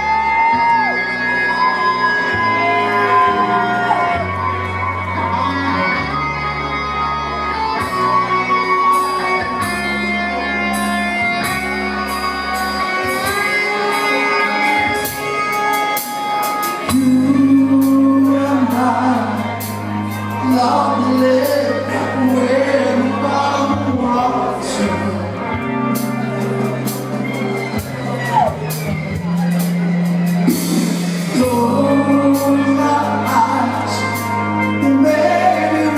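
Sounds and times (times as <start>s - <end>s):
bass guitar: 0.0s - 35.9s
electric guitar: 0.0s - 35.9s
person singing: 11.4s - 27.1s, 30.5s - 35.9s
drums with cymbal strikes: 26.0s - 31.8s.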